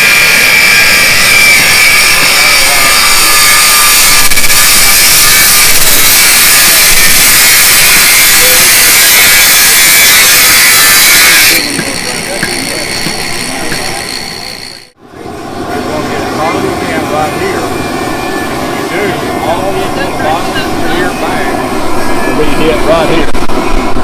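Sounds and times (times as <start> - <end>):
belt grinder grinding steel: 0.0 - 15.0.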